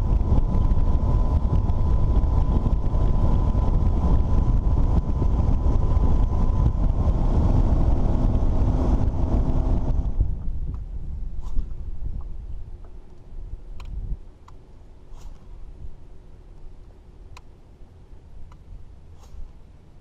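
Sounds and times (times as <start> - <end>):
wind buffeting microphone: 0.0 - 14.3.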